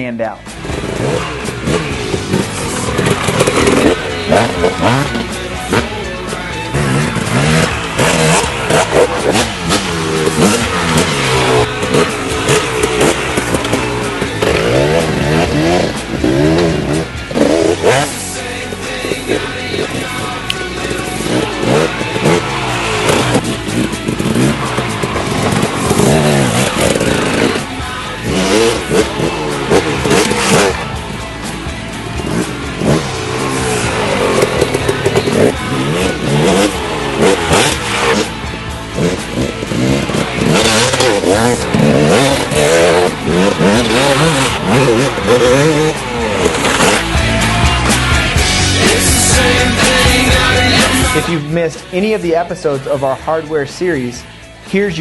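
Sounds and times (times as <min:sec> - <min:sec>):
two-stroke engine revving: 0:00.0 - 0:53.4.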